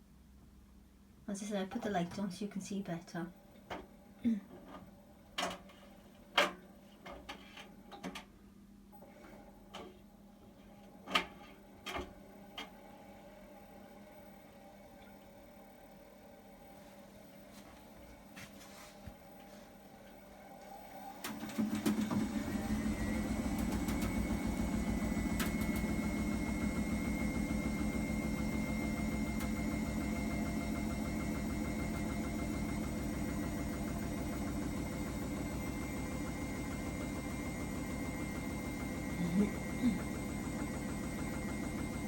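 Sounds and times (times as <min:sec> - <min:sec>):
washing machine motor whine: 0:08.9 - 0:42.0
washing machine churning: 0:20.2 - 0:42.0.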